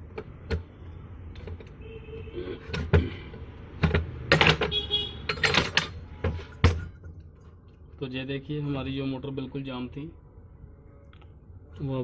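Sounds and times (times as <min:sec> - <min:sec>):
metallic clicks and knocks: 0:03.8 - 0:07.0.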